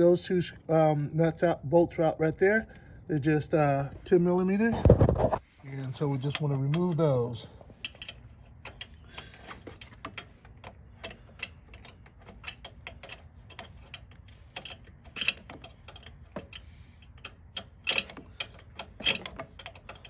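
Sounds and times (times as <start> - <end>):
ratchet wrench clicking: 7.8 - 20.0.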